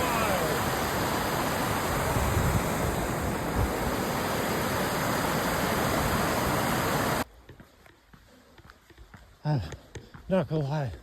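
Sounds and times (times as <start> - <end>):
waterfall rushing: 0.0 - 7.2.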